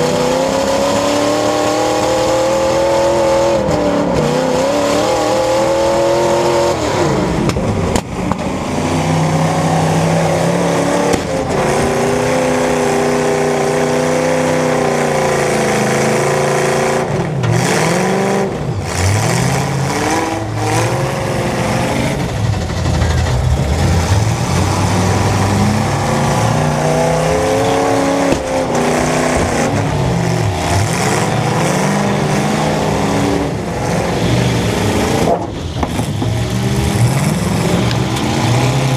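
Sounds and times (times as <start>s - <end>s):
car engines revving: 0.0s - 38.9s
cars colliding bangs: 7.2s - 9.2s, 22.0s - 38.4s.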